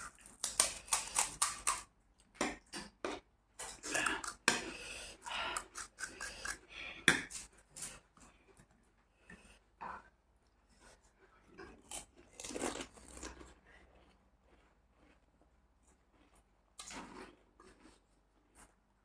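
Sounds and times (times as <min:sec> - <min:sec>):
biting and chewing snacks: 0:00.0 - 0:02.8, 0:11.4 - 0:18.8.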